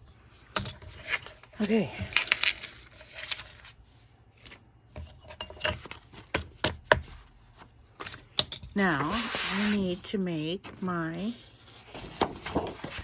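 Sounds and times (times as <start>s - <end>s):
paper being handled: 8.8s - 10.0s.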